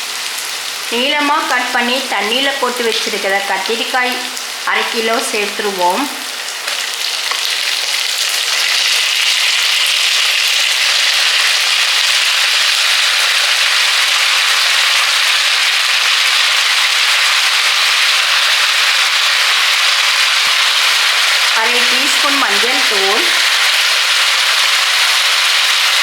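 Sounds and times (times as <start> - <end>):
eggplant sizzling in hot oil: 0.0 - 26.0.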